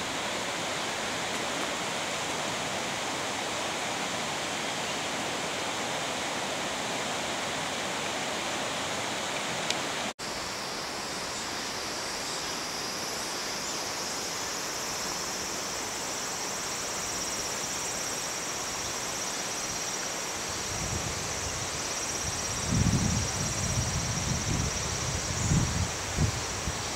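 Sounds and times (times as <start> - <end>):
steady high hiss: 0.0 - 26.9
stream rushing over rocks: 0.0 - 26.9.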